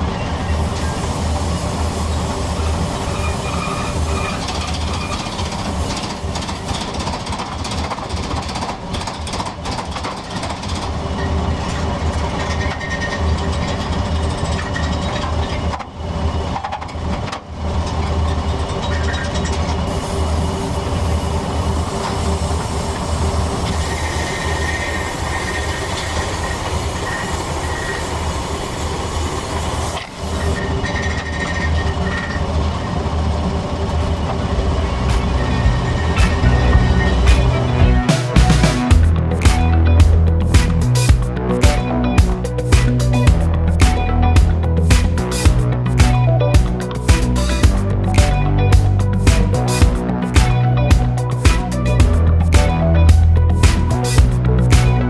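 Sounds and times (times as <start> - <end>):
machine humming: 34.0 - 55.0.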